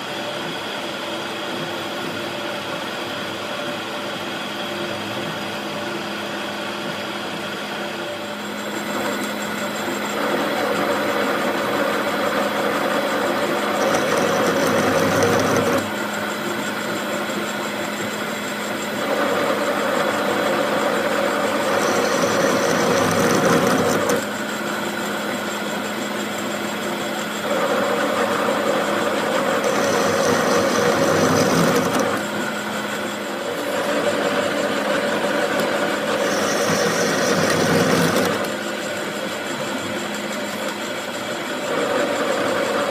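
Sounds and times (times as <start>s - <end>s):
machine motor humming: 8.6s - 17.1s, 17.9s - 42.2s.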